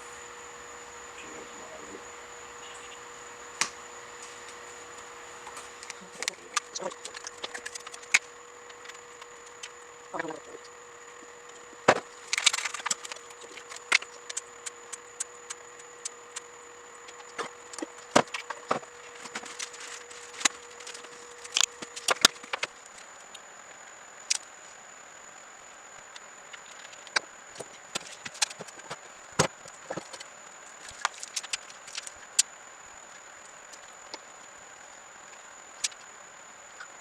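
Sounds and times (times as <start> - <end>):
faint high-pitched whine: 0.0 - 37.0.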